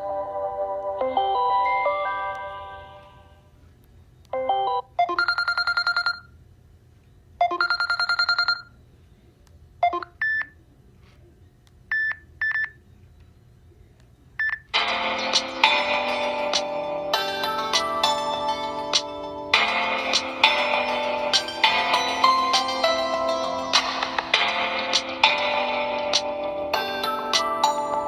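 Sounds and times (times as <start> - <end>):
ringtone melody: 0.0 - 3.4, 4.4 - 6.2, 14.7 - 28.0
trilling electronic ringing: 4.4 - 6.3.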